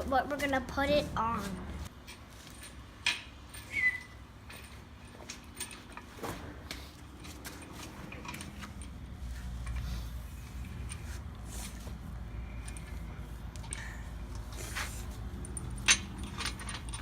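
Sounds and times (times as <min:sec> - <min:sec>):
short squeak: 0:03.6 - 0:04.2
light metal clinks and knocks: 0:04.4 - 0:17.0.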